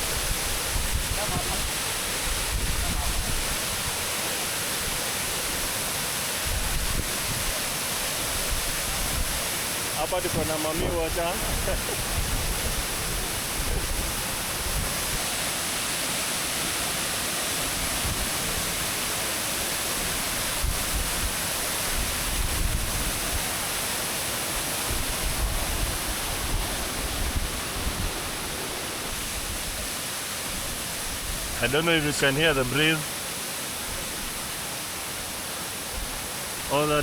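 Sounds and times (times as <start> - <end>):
wind rumbling on microphone: 0.0 - 4.0, 6.4 - 7.6, 10.1 - 15.3, 20.0 - 23.6, 24.8 - 29.9
waterfall rushing: 0.0 - 37.0.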